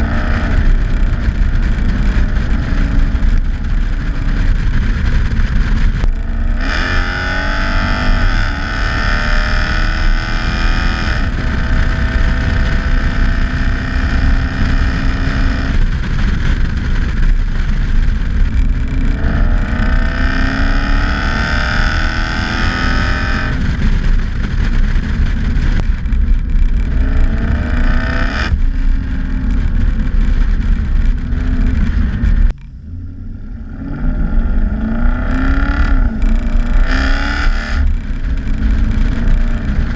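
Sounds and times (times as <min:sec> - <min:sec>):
drivetrain whine: 0:00.0 - 0:39.9
car engine revving through gears: 0:06.0 - 0:15.9, 0:19.0 - 0:23.8.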